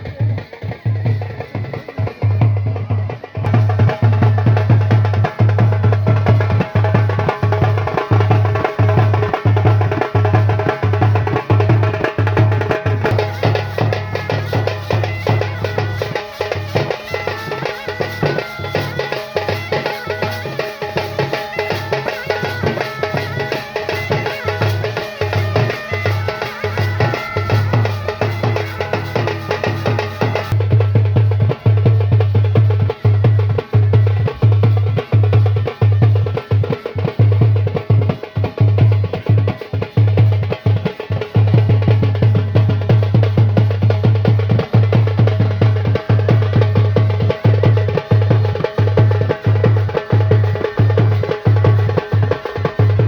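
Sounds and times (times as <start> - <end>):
heavy steady drum beat: 0.0 - 53.0
loud band music: 11.0 - 30.7.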